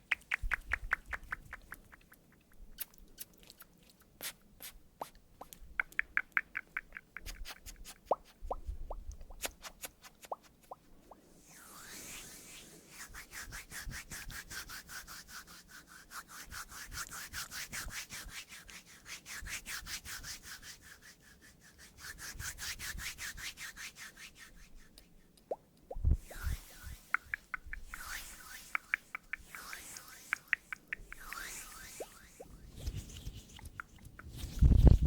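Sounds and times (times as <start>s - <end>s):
fast scrubbing strokes: 26.0s - 35.0s.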